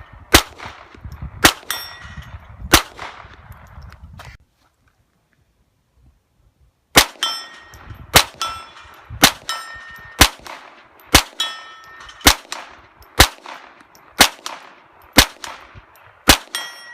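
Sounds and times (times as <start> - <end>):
pistol shots: 0.3 - 1.9, 2.7 - 3.4, 6.9 - 16.9
steel target plate clanging: 7.2 - 10.2, 11.0 - 12.4, 16.5 - 16.9.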